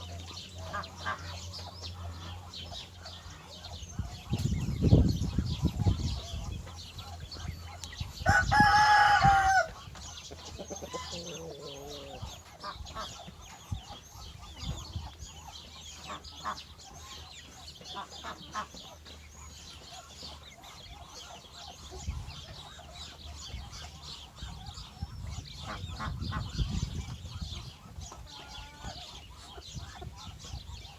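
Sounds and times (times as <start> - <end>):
chickens clucking: 0.0 - 30.9
rooster crowing: 8.2 - 9.8.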